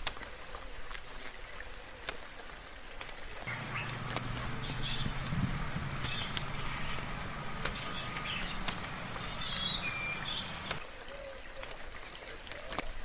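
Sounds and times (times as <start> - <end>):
rain: 0.0 - 13.0
birds chirping: 3.5 - 10.8
low hum: 3.5 - 10.8.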